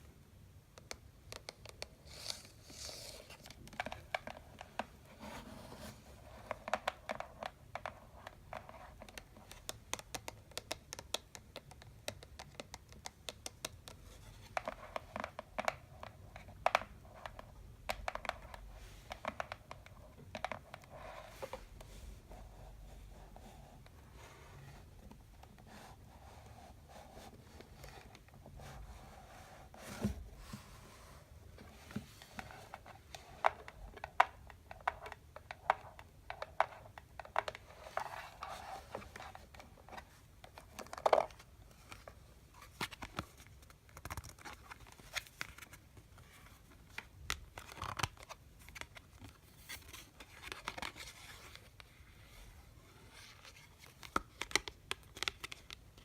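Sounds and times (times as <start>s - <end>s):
hand tapping candy boxes: 6.6s - 20.8s.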